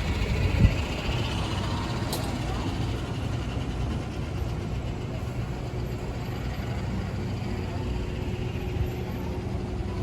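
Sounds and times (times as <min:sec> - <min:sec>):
wind rumbling on microphone: 0:00.0 - 0:01.6.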